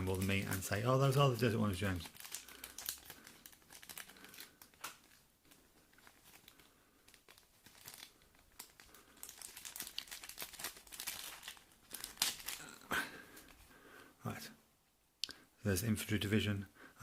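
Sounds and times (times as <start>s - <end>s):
packaging crinkling: 0.0s - 13.6s.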